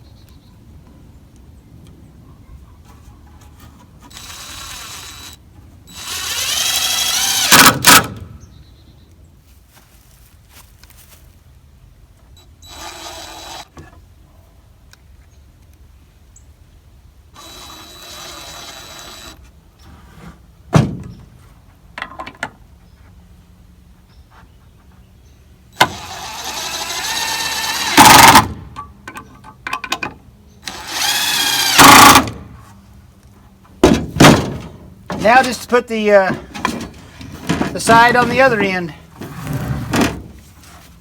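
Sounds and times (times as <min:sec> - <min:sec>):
drill driving screws into wood: 0:04.1 - 0:08.4, 0:12.6 - 0:13.8, 0:17.4 - 0:19.4, 0:25.8 - 0:28.7, 0:30.6 - 0:32.5, 0:34.2 - 0:38.8
boards knocking: 0:33.8 - 0:39.3.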